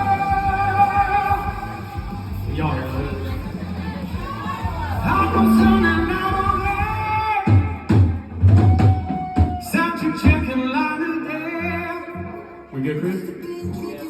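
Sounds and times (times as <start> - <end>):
live band playing: 0.0 - 11.5
drum hits: 4.2 - 9.7
people singing in harmony: 5.1 - 6.4.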